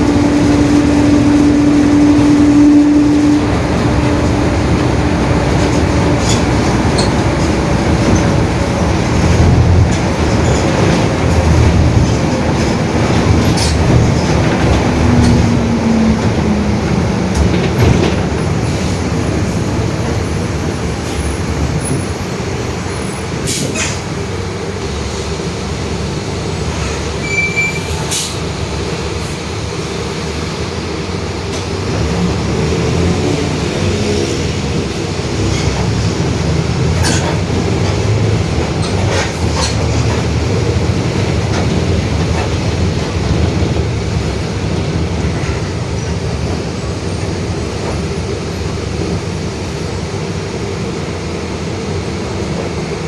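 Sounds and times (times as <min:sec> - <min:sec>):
bus engine rumble: 0:00.0 - 0:53.0.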